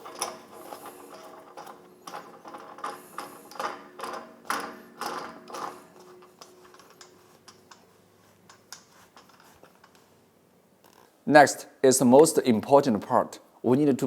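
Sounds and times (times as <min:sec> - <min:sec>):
ratchety clicks and scrapes of metal leg: 0:00.0 - 0:10.1, 0:10.8 - 0:11.1.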